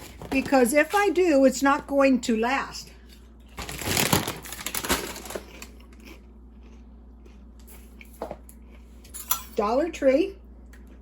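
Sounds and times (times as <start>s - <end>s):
crinkly packaging crackling: 3.5s - 6.2s.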